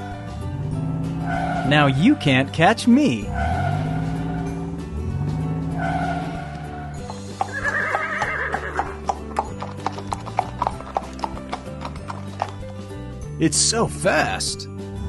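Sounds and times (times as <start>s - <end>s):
background music: 0.0s - 15.0s
galloping hoofbeats: 7.0s - 13.0s
horse whinny: 7.3s - 9.5s.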